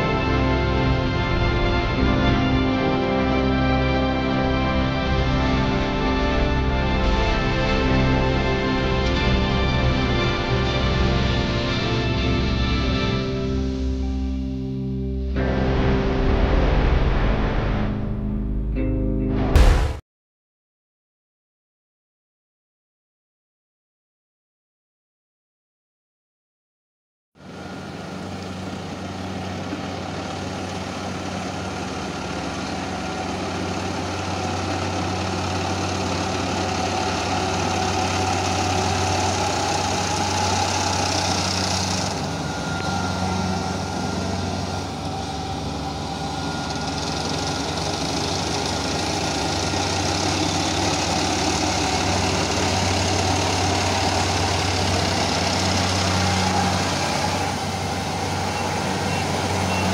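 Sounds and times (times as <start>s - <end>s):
diesel engine running: 0.0s - 18.7s, 27.4s - 59.9s.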